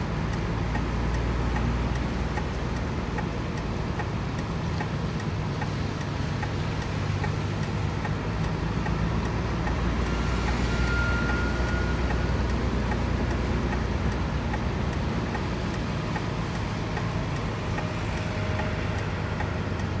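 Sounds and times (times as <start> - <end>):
vehicle engines humming: 0.0 - 20.0
brief high tone: 10.1 - 12.4.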